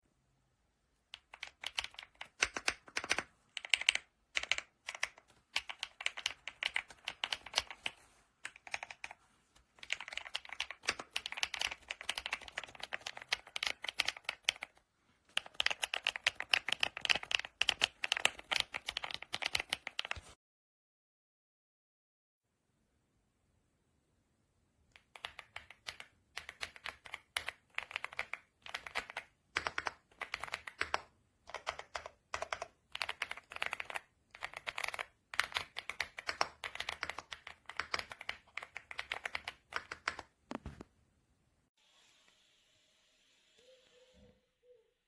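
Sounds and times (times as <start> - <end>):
mechanical keyboard typing: 1.1 - 20.4, 25.0 - 40.4.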